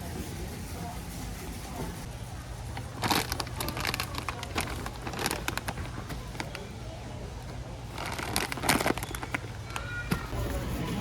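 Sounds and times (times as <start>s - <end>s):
faint voices: 0.0s - 11.0s
handling clicks and rustles: 2.8s - 6.8s, 7.4s - 10.3s.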